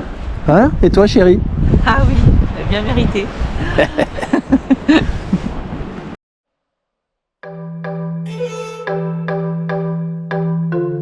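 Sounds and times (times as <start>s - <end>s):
background music struck notes: 7.4s - 11.0s.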